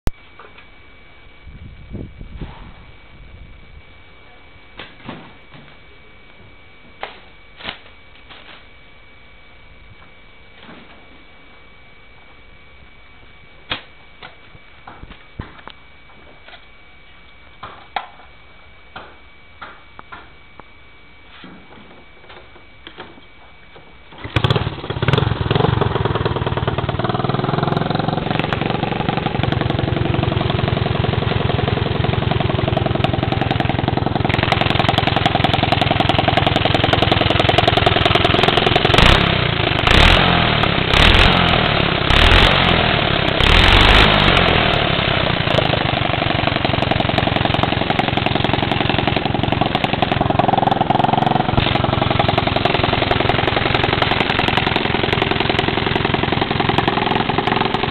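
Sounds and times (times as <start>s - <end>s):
engine idling and revving: 24.2s - 57.9s.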